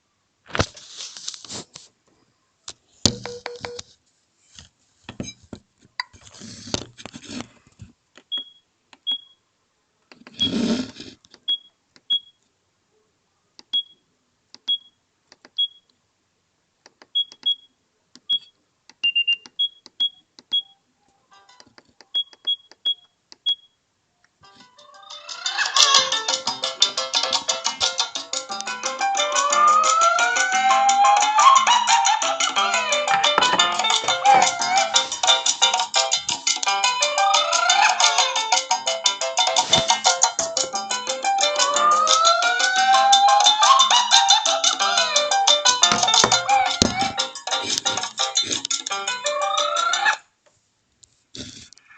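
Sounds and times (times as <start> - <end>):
noisy rustles: 0.4 - 2.0.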